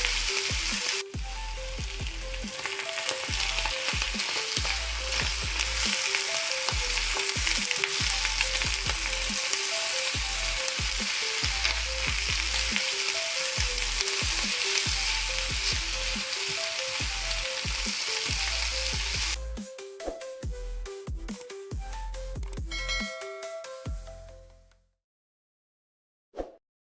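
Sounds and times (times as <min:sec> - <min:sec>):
food frying sizzle: 0:00.0 - 0:19.4.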